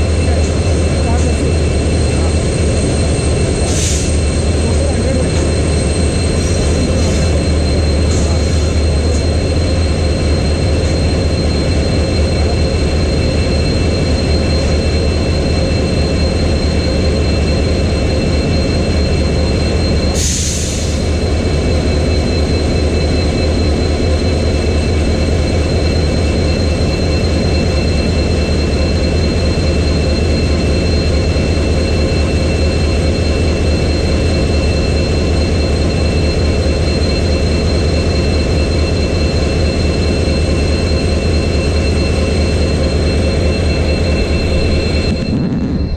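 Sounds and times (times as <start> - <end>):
locomotive diesel engine idling: 0.0 - 32.2
high-pitched whine: 0.0 - 45.9.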